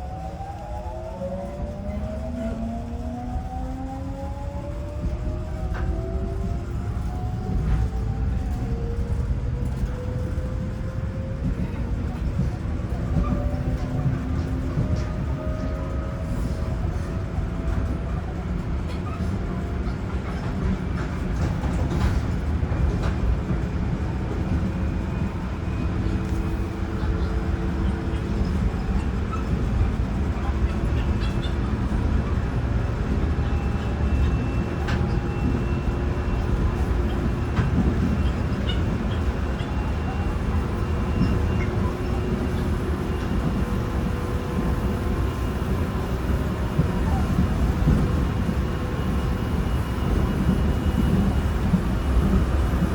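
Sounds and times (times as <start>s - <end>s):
train wheel and track noise: 0.0s - 52.9s.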